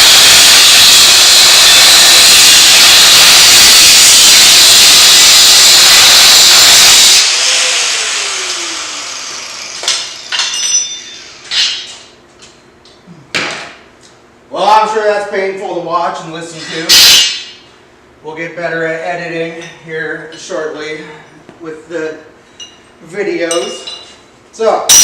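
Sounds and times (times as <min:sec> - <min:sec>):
grinder disc spinning down: 0:00.0 - 0:10.3
angle grinder cutting metal: 0:00.0 - 0:10.6.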